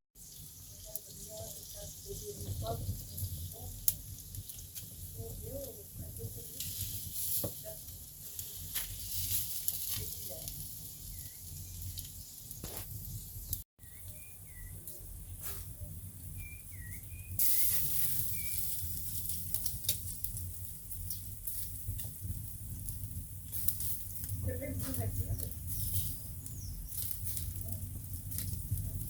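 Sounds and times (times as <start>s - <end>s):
fat crackling and popping on coals: 0.2s - 29.0s
meat sizzling on a grill: 0.2s - 29.0s
bird chirping: 11.0s - 18.8s, 26.3s - 27.8s.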